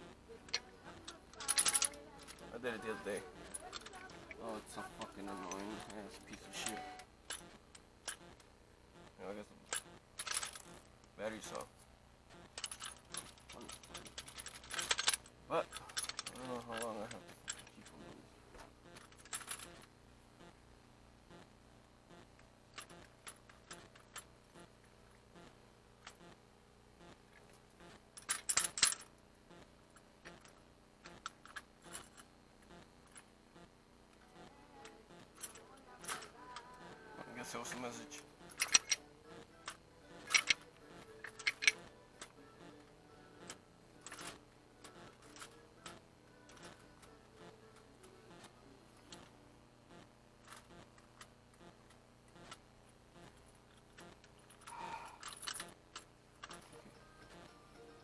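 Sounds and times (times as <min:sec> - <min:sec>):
small metal parts clinking: 0:00.5 - 0:07.5, 0:09.7 - 0:11.6, 0:12.4 - 0:18.0, 0:19.0 - 0:19.9, 0:28.2 - 0:29.2, 0:30.2 - 0:32.3, 0:35.4 - 0:36.7, 0:37.4 - 0:42.5, 0:43.4 - 0:47.2, 0:53.7 - 0:57.4
seatbelt retractor rattling: 0:38.6 - 0:39.0.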